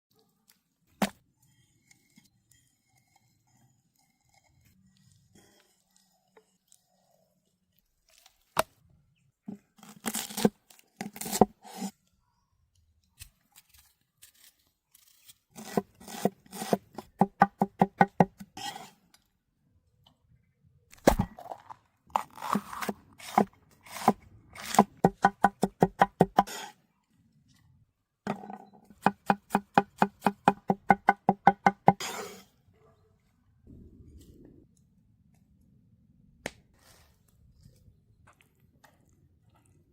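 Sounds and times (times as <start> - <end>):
knife chopping on cutting board: 29.0 - 32.1.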